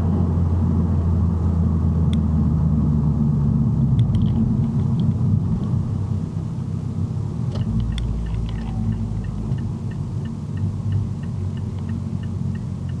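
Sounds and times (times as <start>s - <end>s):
car engine rumble: 0.0s - 13.0s
light regular ticking: 7.5s - 13.0s.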